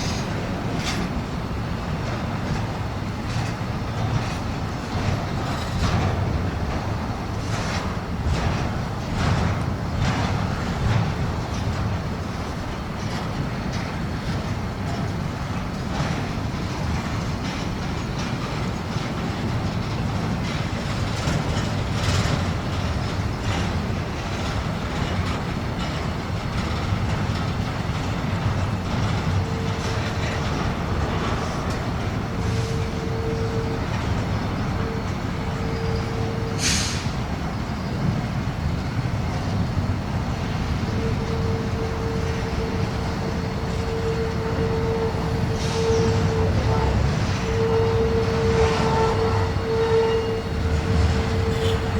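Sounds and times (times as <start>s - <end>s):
train clanks: 0.0s - 51.9s
train wheels rumbling on rail: 0.0s - 51.9s.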